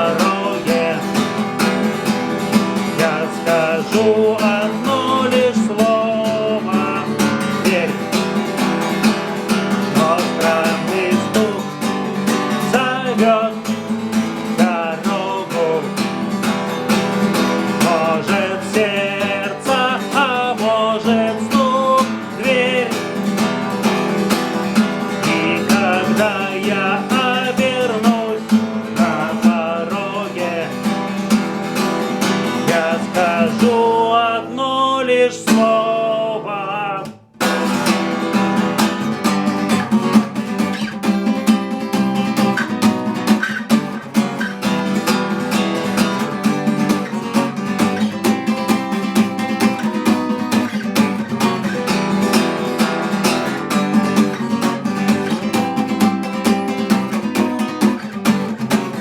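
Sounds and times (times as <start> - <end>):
person singing: 0.0 - 39.8
acoustic guitar strumming: 0.0 - 59.0.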